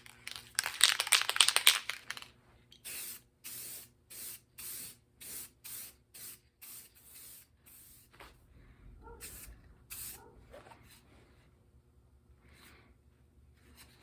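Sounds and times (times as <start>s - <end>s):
short spraying bursts: 2.8s - 8.1s, 9.2s - 10.2s.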